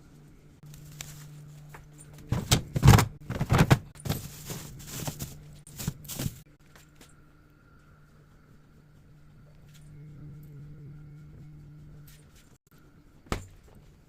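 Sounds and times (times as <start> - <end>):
steady low hum: 0.0 - 14.0
objects clattering and knocking: 1.7 - 6.5.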